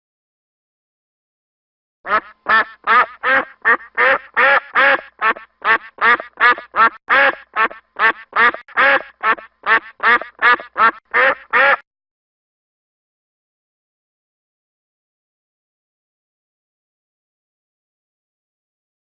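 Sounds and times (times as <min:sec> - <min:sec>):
duck quacking: 0:02.1 - 0:11.8.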